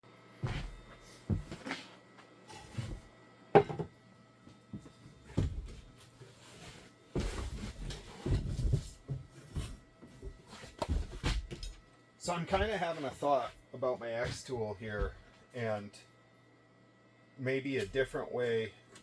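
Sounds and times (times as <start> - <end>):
faint steady hum: 0.1 - 19.0
objects knocking and clunking: 3.6 - 4.0.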